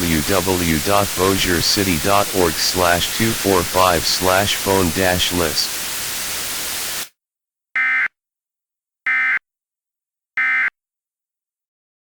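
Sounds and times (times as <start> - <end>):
steady hiss: 0.0 - 7.1.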